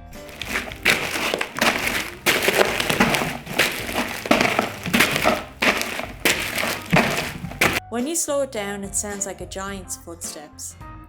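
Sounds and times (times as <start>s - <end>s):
footsteps crunching on gravel: 0.0s - 7.8s.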